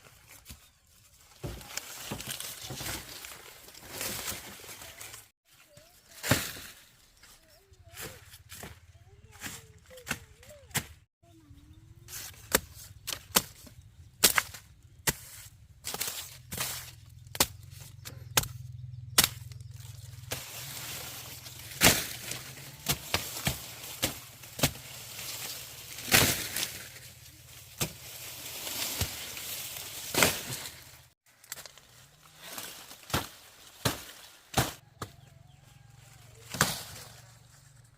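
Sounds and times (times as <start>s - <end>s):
leafy rustling: 0.0s - 8.2s, 19.4s - 37.9s
blade chopping sugarcane: 12.1s - 26.9s, 27.8s - 30.7s, 33.0s - 35.2s, 36.5s - 37.0s.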